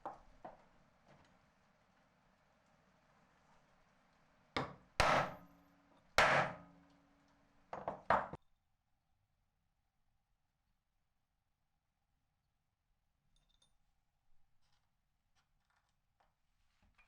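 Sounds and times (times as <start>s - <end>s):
sharp knocks on metal: 4.6s - 5.4s, 6.2s - 6.7s.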